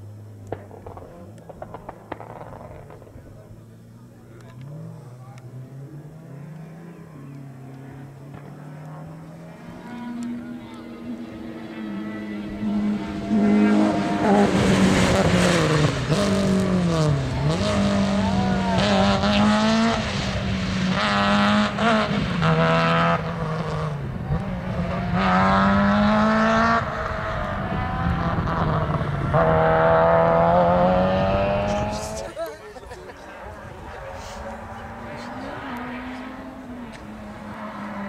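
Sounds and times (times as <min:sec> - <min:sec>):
rally car engine revving: 0:00.0 - 0:38.0
sharp exhaust cracks: 0:00.4 - 0:05.6.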